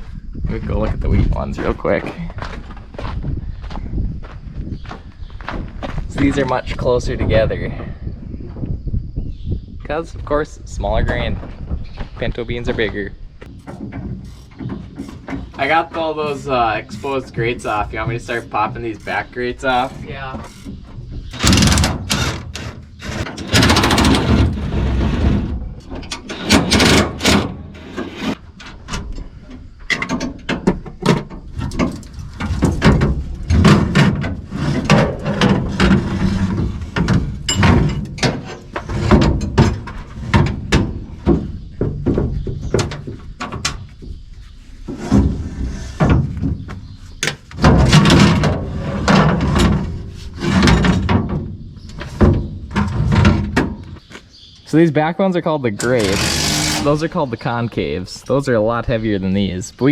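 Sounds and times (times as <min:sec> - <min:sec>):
metal clanks and knocks: 0:11.0 - 0:44.2, 0:44.8 - 0:54.1.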